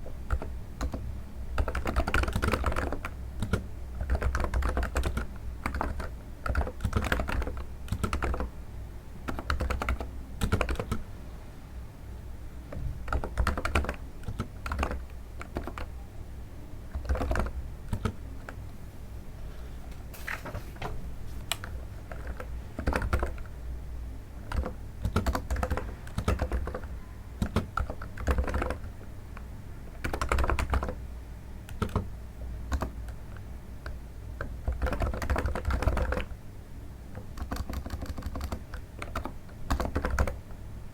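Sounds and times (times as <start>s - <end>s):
keyboard typing: 0.0s - 8.5s, 9.2s - 11.0s, 12.7s - 16.0s, 16.8s - 18.7s, 20.8s - 23.6s, 24.4s - 31.0s, 31.6s - 32.1s, 32.7s - 36.4s, 37.1s - 40.6s.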